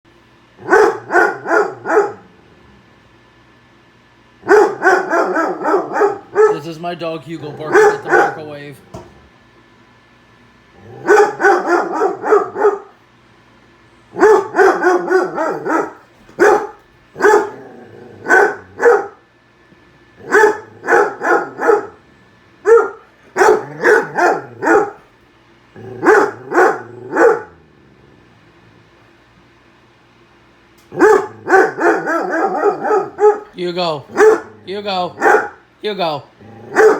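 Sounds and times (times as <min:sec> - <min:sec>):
dog barking: 0:00.6 - 0:02.3, 0:04.4 - 0:06.7, 0:07.6 - 0:08.5, 0:11.0 - 0:13.0, 0:14.1 - 0:17.6, 0:18.2 - 0:19.2, 0:20.2 - 0:22.0, 0:22.6 - 0:25.0, 0:26.0 - 0:27.6, 0:30.9 - 0:35.6.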